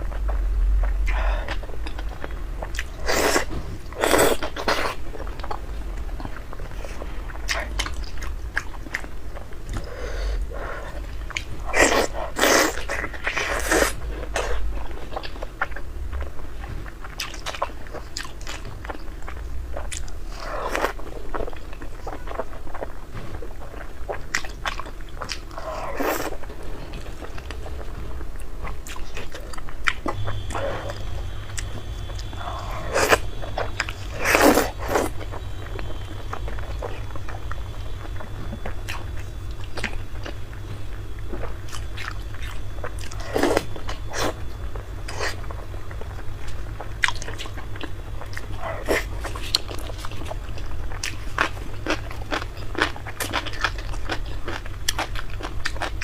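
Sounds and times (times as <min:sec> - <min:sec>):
chewing: 0:00.0 - 0:56.0.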